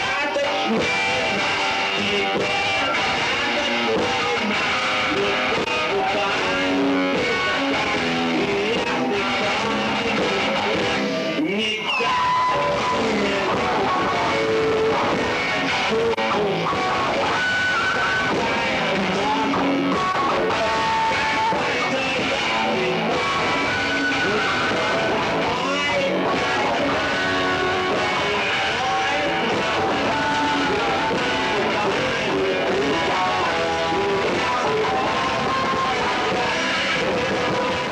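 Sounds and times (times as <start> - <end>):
rock music with guitars: 0.0 - 37.9.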